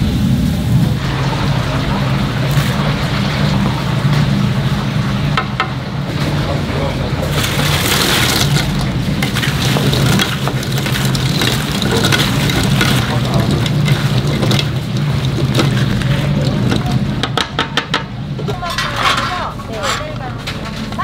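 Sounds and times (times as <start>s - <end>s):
low machine hum: 0.0s - 21.0s
clattering and rustling: 7.3s - 17.1s.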